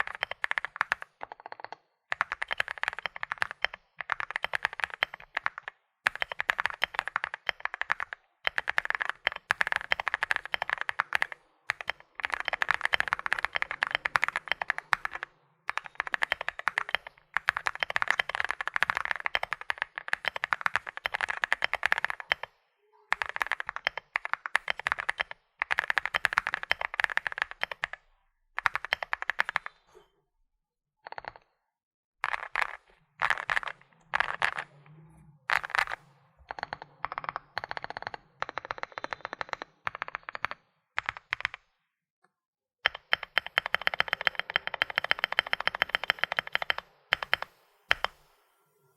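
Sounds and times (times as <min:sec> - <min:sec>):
mechanical keyboard key clacks: 0:00.0 - 0:22.5, 0:42.9 - 0:48.2.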